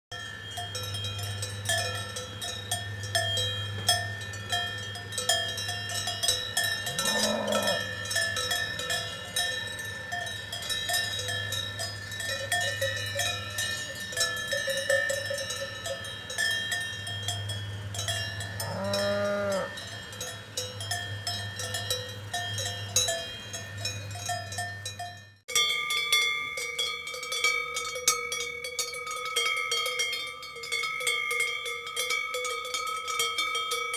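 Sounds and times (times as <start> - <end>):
cowbells clanking: 0.1 - 33.9
cow mooing: 6.9 - 8.0, 18.5 - 19.8.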